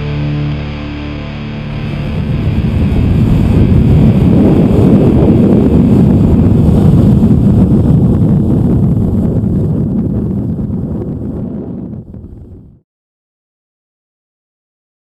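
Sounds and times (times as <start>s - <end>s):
speedboat running fast on water: 1.0s - 9.1s
wind buffeting microphone: 1.8s - 12.8s.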